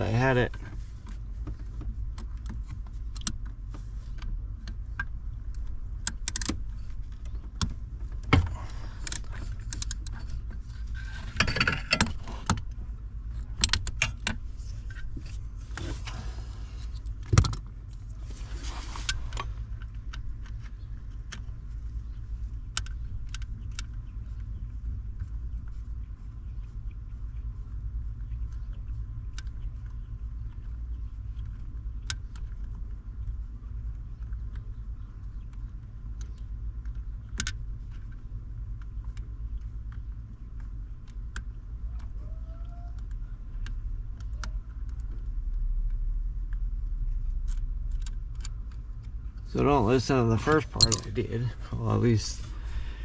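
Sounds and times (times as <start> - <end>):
steady low hum: 0.0 - 42.2, 43.0 - 53.0
metal hand tools clinking: 50.6 - 51.2.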